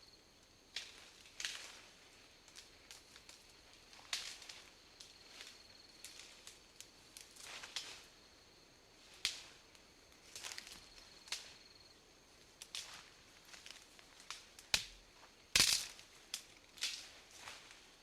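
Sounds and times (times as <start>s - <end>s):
vegetation snapping and cracking: 0.8s - 1.7s, 4.1s - 4.6s, 12.6s - 17.0s.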